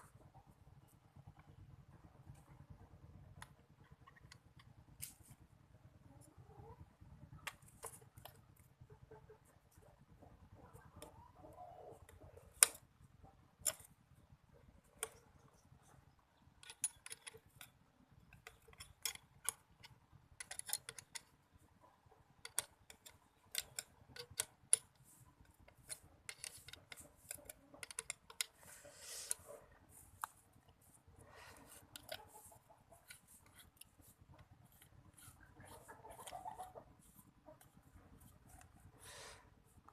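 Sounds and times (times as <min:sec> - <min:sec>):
small hard parts clicking: 0:12.0 - 0:39.9.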